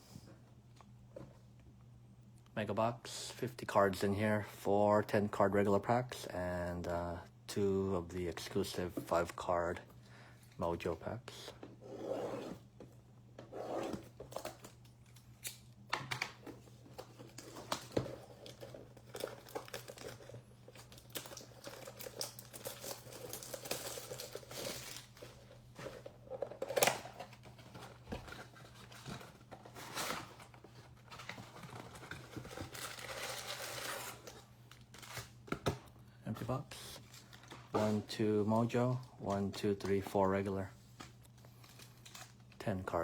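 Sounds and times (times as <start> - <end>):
crinkling and tearing packaging: 17.0 - 35.5, 41.3 - 42.6.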